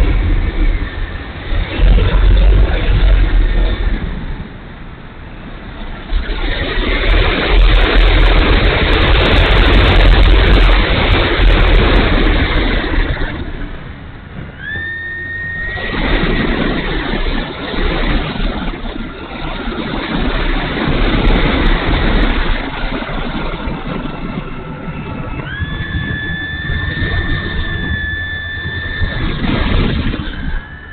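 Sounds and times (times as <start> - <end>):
wind buffeting microphone: 0.0 - 30.9
electric motor whine: 14.5 - 16.1, 23.8 - 30.9.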